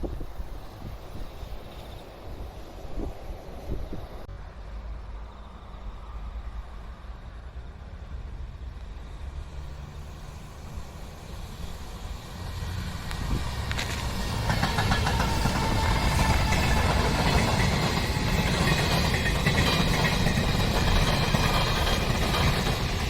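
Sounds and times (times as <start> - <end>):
train rumble: 0.0 - 23.0
wheel-on-rail clatter: 13.6 - 23.0.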